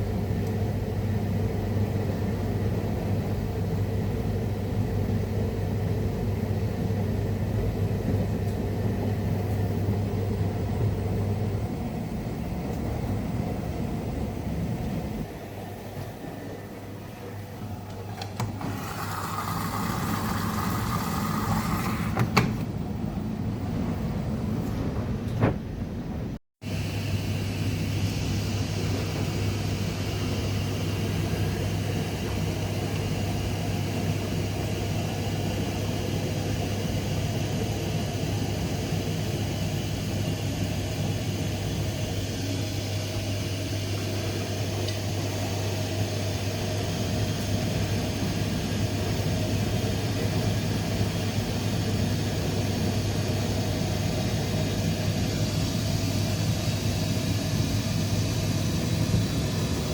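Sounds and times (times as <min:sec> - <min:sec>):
washing machine running: 0:00.0 - 0:59.9.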